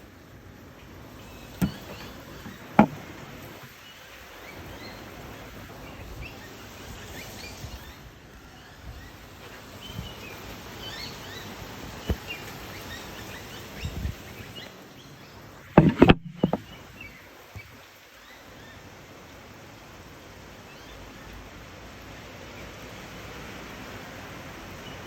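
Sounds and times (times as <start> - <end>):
steady rain: 0.0 - 1.5, 3.0 - 15.6, 17.3 - 25.0
birds chirping: 1.0 - 4.0
loud thumps: 1.6 - 3.2, 15.8 - 16.7.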